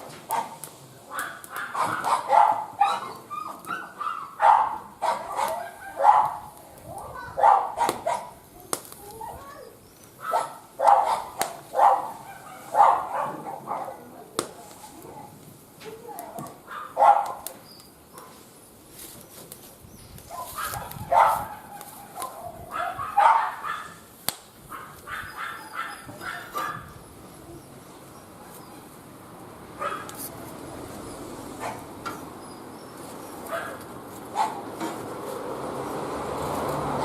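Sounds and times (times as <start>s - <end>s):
wood fire popping and crackling: 0.0s - 3.8s, 4.8s - 7.2s, 7.8s - 10.2s, 10.9s - 12.3s, 14.2s - 22.6s, 23.9s - 25.1s
dog barking: 0.3s - 6.5s, 7.4s - 8.4s, 10.2s - 14.0s, 16.7s - 17.4s, 20.3s - 24.0s, 24.7s - 26.9s, 29.8s - 30.2s, 31.6s - 31.9s, 33.5s - 34.6s.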